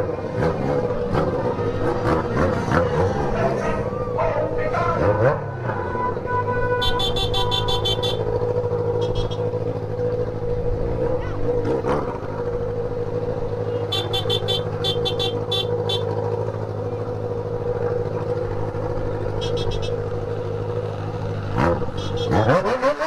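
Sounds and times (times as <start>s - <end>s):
running engines: 0.0s - 23.0s
vehicle horns honking: 4.5s - 10.2s, 11.0s - 11.6s, 13.4s - 16.5s, 18.3s - 20.8s, 21.6s - 22.6s.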